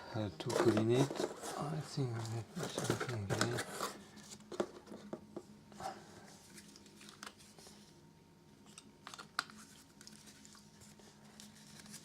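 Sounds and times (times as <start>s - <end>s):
faint steady hum: 0.0s - 12.0s
soft crinkling: 0.4s - 5.0s.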